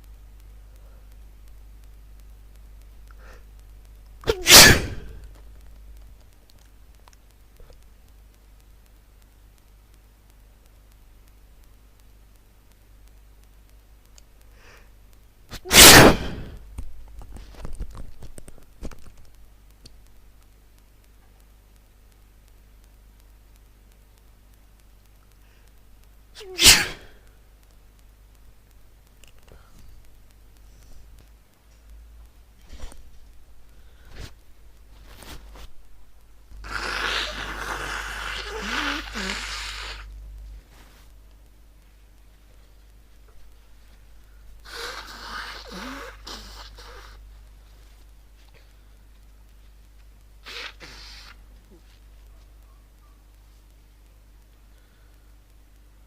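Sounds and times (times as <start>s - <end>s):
person sneezing: 4.2s - 5.2s, 15.5s - 16.6s, 26.4s - 27.2s, 36.6s - 40.1s, 44.6s - 47.2s, 50.4s - 51.4s
person sneezing loudly: 4.2s - 5.2s, 15.5s - 16.6s, 26.4s - 27.2s.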